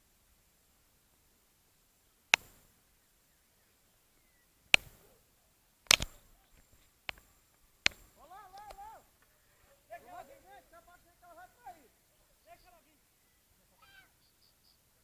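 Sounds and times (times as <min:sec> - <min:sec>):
sharp cracks: 0:02.3 - 0:02.7, 0:04.7 - 0:05.2, 0:05.9 - 0:09.0.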